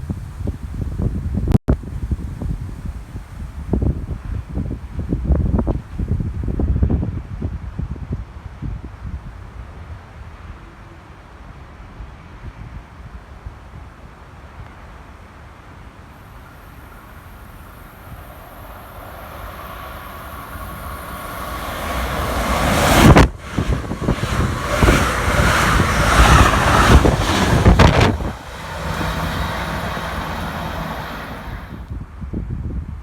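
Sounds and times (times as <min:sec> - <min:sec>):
passenger train passing: 0:16.1 - 0:31.9
train wheels clattering: 0:18.1 - 0:31.8.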